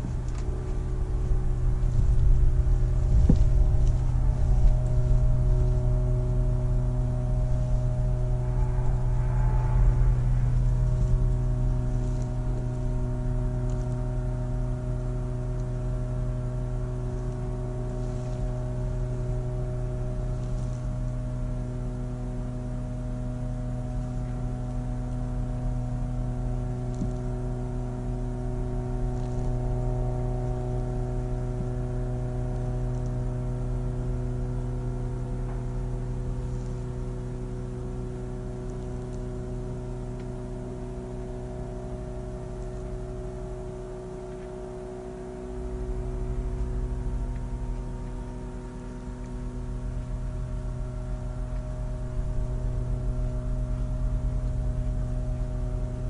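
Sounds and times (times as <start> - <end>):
sawmill machinery droning: 0.0 - 32.7.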